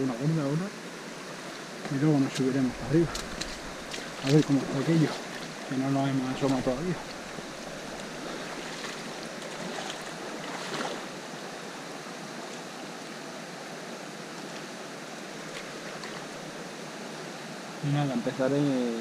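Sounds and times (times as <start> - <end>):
river water rushing: 0.0 - 18.8
water swish: 2.2 - 11.2.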